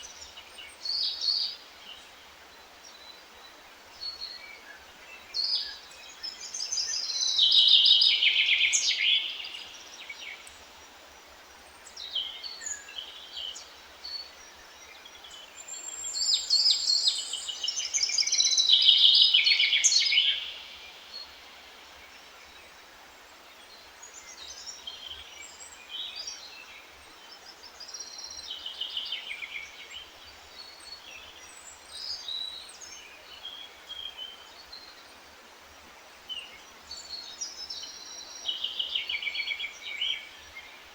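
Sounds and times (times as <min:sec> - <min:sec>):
faint steady hiss: 0:00.0 - 0:40.9
songbirds singing: 0:00.0 - 0:40.9.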